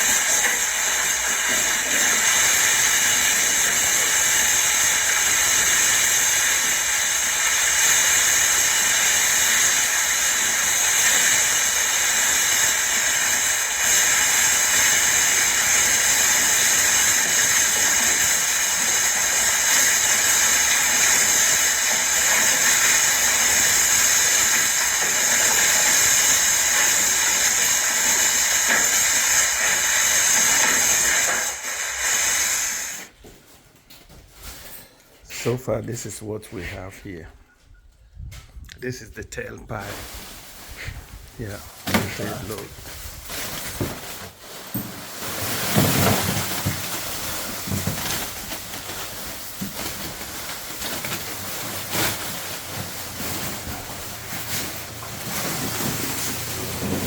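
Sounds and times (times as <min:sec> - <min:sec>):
steady high-pitched hiss: 0:00.0 - 0:33.1.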